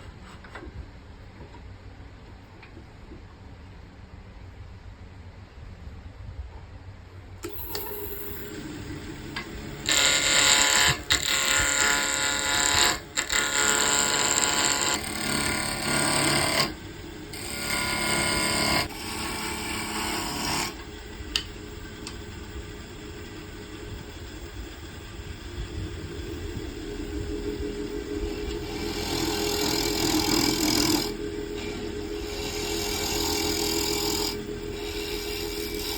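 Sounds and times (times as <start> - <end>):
tool cutting spinning wood: 7.4 - 35.9
wood lathe running: 7.4 - 35.9.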